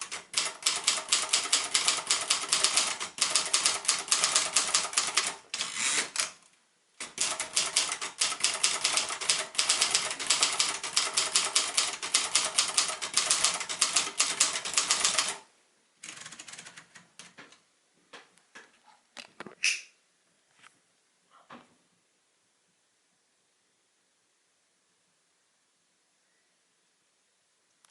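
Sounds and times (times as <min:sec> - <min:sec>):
manual typewriter typing: 0:00.0 - 0:06.4, 0:07.0 - 0:17.6.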